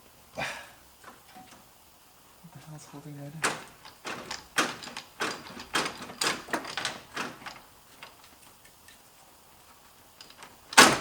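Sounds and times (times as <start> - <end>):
sharp metal knocks and clacks: 3.4 - 8.3, 10.2 - 11.0.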